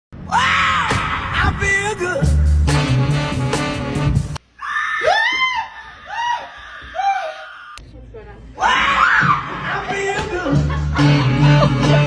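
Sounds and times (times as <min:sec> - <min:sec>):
music with heavy bass: 0:00.2 - 0:04.4, 0:09.3 - 0:12.0.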